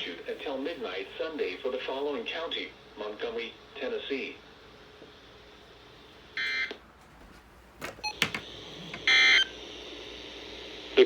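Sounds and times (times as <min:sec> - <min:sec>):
clicks: 0:07.0 - 0:09.1.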